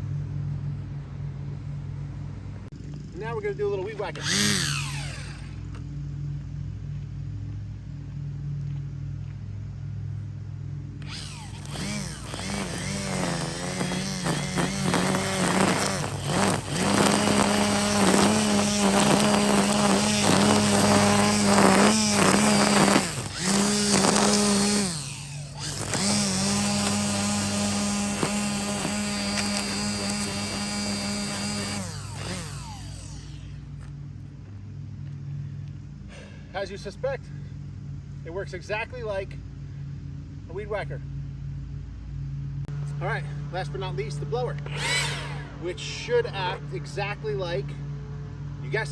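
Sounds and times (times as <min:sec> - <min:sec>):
string trimmer motor whining: 0:02.8 - 0:05.9, 0:10.9 - 0:34.1, 0:43.8 - 0:47.4.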